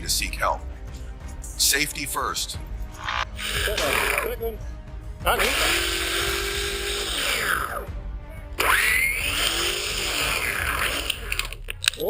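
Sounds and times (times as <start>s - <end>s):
chainsaw revving: 3.0s - 4.3s, 5.3s - 7.9s, 8.6s - 11.6s.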